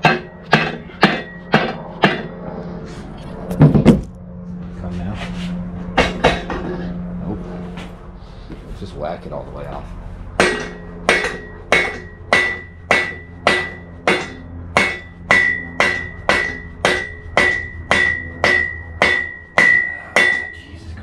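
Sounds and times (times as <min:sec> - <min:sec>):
hammer striking metal: 0:00.0 - 0:02.4, 0:06.0 - 0:06.8, 0:10.4 - 0:20.6.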